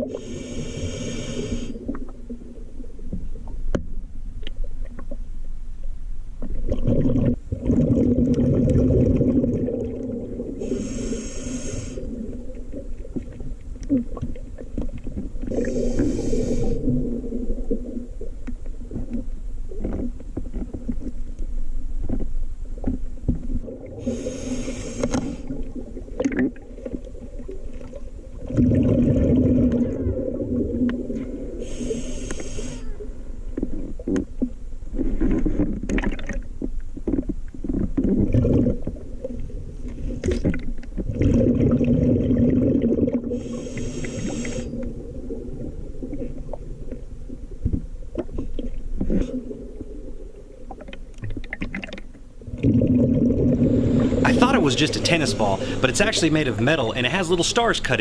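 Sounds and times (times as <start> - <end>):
diver inhaling through regulator: 0.0 - 1.9, 10.6 - 12.2, 15.5 - 16.9, 24.0 - 25.6, 31.5 - 33.0, 43.3 - 44.9, 55.4 - 56.0
exhaled bubbles gurgling: 6.4 - 21.2, 22.8 - 58.0.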